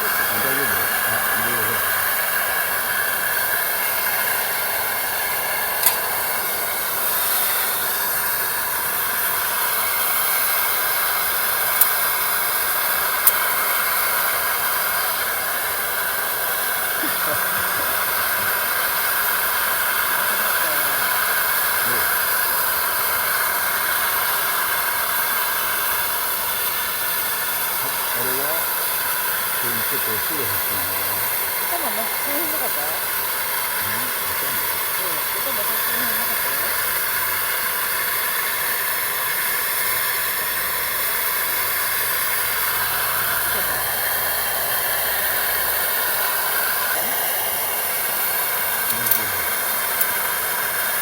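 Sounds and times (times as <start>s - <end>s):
steady hiss: 0.0s - 51.0s
sharp clicks: 5.7s - 6.4s, 48.7s - 50.3s.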